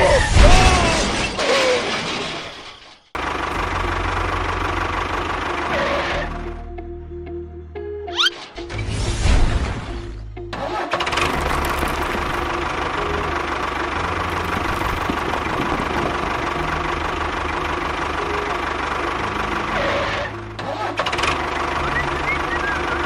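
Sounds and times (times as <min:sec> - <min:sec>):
engine idling with knocking: 0:03.2 - 0:06.2, 0:11.0 - 0:23.0.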